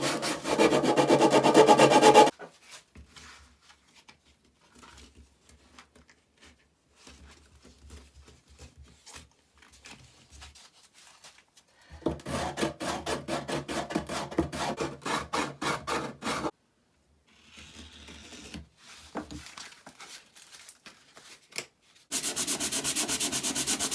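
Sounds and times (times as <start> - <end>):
rubbing strokes on wood: 0.0 - 2.3, 22.1 - 23.9.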